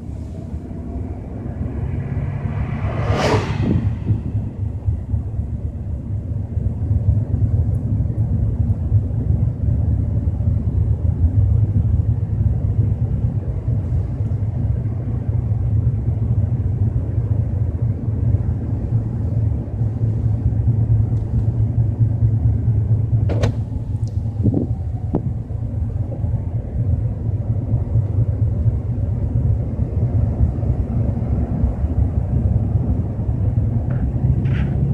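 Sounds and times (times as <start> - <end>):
car cabin rumble: 18.1 - 31.2, 31.9 - 34.9.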